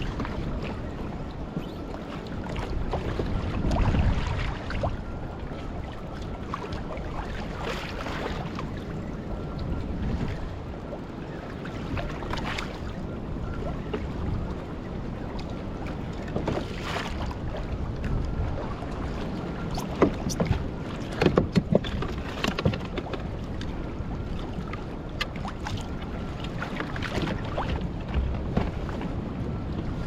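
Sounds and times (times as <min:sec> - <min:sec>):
water slapping against boat hull: 0:00.0 - 0:05.0, 0:19.6 - 0:30.0
wind buffeting microphone: 0:00.0 - 0:30.0.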